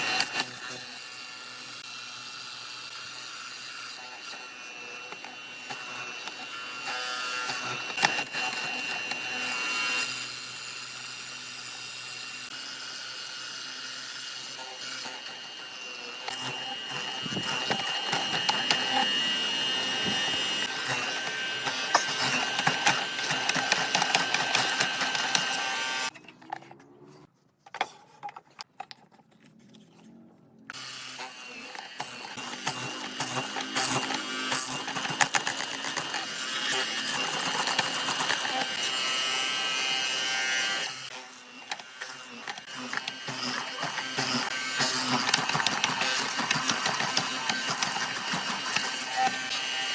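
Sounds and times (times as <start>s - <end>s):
electric power tool whining: 0.0s - 26.2s, 30.7s - 49.9s.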